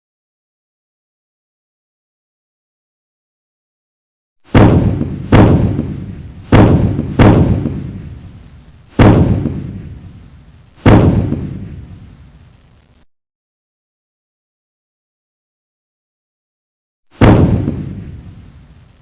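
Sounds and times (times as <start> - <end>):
heavy booming impacts: 4.4 - 12.4, 17.1 - 18.9.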